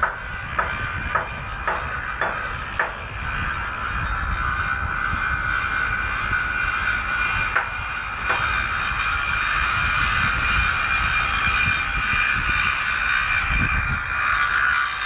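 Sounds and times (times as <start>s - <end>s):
sharp knocks: 0.0s - 3.1s, 8.3s - 8.6s
machinery droning: 0.0s - 15.0s.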